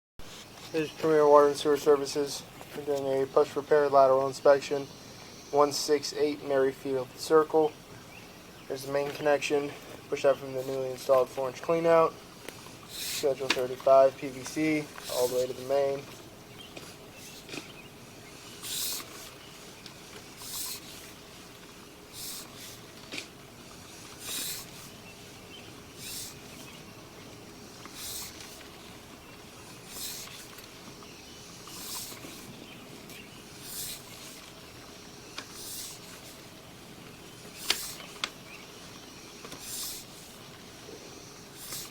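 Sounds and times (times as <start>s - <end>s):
faint electrical hum: 0.3s - 41.9s
cable rubbing in pipe: 12.6s - 15.9s, 18.3s - 25.0s, 26.0s - 26.7s, 27.7s - 28.9s, 29.6s - 30.8s, 31.6s - 32.6s, 33.5s - 34.6s, 35.4s - 36.5s, 37.4s - 38.3s, 39.5s - 40.4s, 41.4s - 41.9s.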